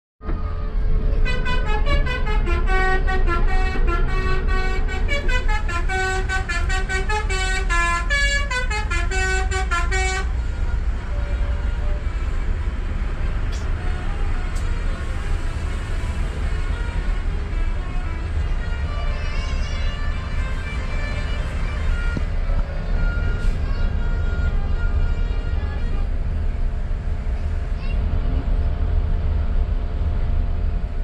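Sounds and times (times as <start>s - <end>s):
steady low rumble: 0.2s - 31.0s
musical air horn tune: 1.2s - 10.7s.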